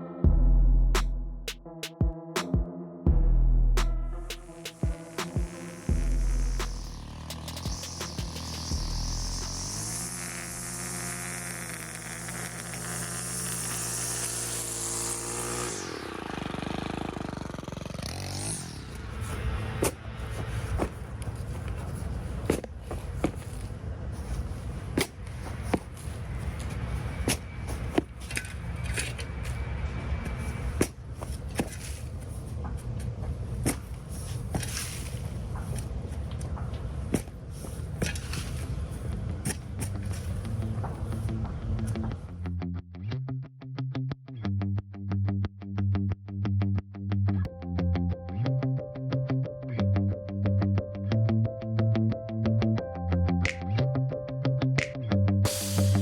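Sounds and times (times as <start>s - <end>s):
steady low rumble: 0.2s - 1.7s, 3.1s - 9.7s
engine running and revving: 4.2s - 21.9s
garden tools knocking and scraping: 30.2s - 32.3s, 33.6s - 38.7s.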